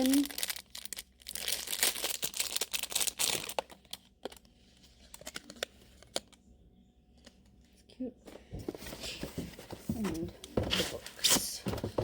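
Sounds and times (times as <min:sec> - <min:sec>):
packaging crinkling: 0:00.0 - 0:06.4.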